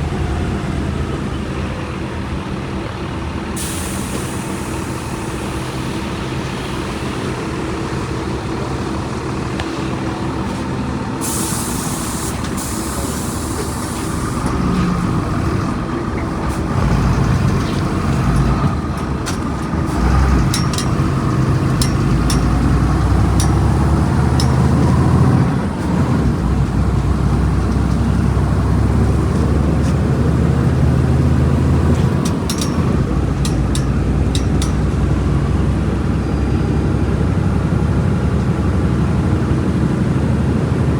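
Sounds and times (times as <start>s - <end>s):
bus engine running: 0.0s - 40.9s
air brake hiss: 3.6s - 7.2s, 11.2s - 14.9s.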